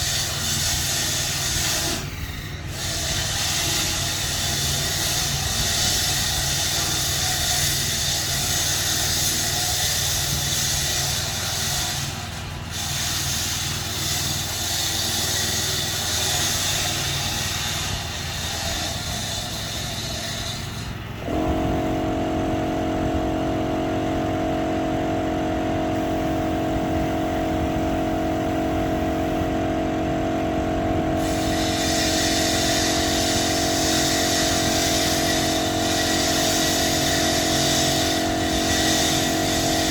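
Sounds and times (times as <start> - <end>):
machinery hissing: 0.0 - 39.9
multi-tone hum: 14.4 - 39.9.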